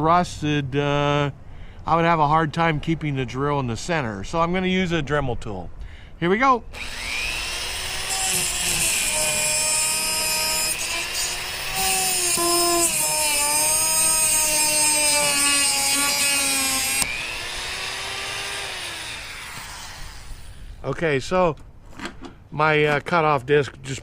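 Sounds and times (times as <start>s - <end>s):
cutoff wheel grinding metal: 6.8s - 20.8s
rotary tool motor whine: 6.8s - 20.8s.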